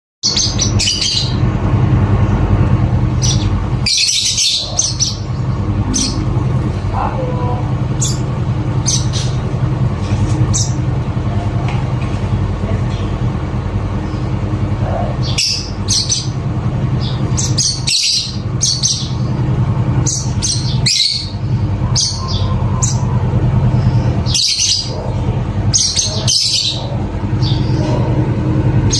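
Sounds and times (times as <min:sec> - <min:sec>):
lovebird squawking and chirping: 0:00.2 - 0:01.4, 0:03.1 - 0:06.8, 0:07.9 - 0:09.4, 0:15.0 - 0:16.4, 0:17.0 - 0:19.2, 0:20.0 - 0:23.1, 0:23.8 - 0:28.1
steady low hum: 0:00.2 - 0:28.9.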